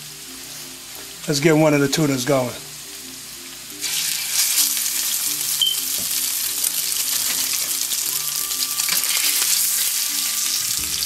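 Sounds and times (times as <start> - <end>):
fish searing in hot oil: 3.7 - 11.0.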